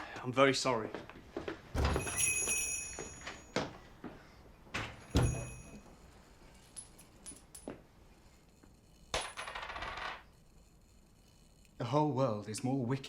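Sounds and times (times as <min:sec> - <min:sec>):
door thud: 0:04.8 - 0:05.7.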